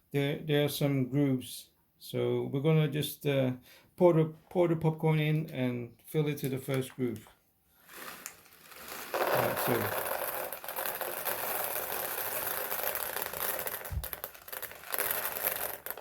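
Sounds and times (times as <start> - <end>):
plastic packet crinkle: 7.8 - 16.0
popcorn kernels pouring into bowl: 7.8 - 16.0.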